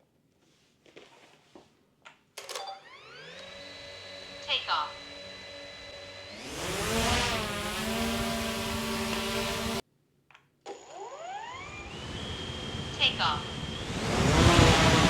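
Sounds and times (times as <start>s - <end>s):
drone propellers whining: 2.9s - 9.8s, 11.3s - 15.0s.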